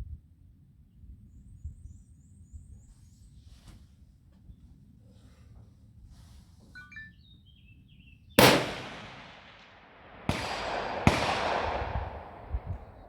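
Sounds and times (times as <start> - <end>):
rifle shots with echo: 8.4 - 13.0.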